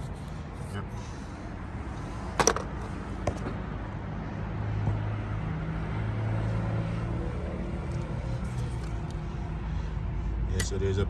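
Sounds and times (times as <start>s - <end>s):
metal engine parts clattering: 2.2s - 3.5s.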